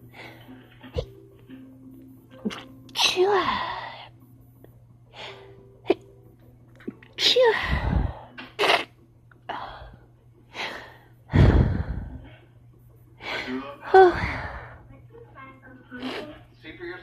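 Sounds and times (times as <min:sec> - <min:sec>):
people sneezing: 0:08.6 - 0:08.9.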